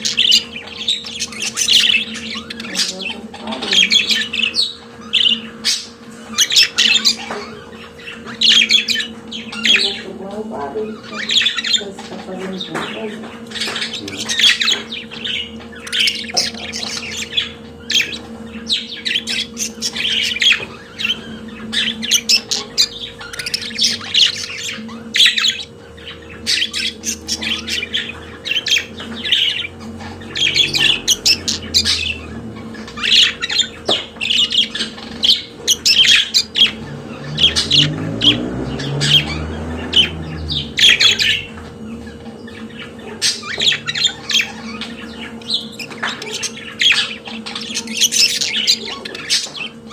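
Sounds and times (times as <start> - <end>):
budgerigars chattering: 0.0 - 49.9.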